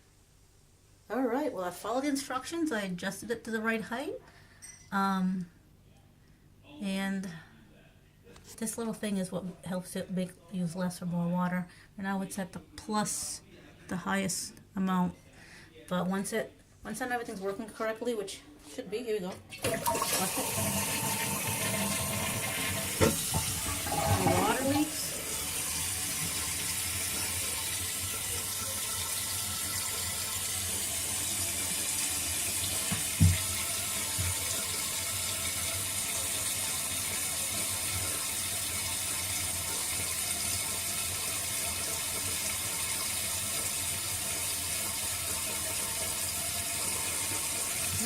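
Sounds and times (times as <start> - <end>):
water hissing into toilet tank: 19.6 - 48.0.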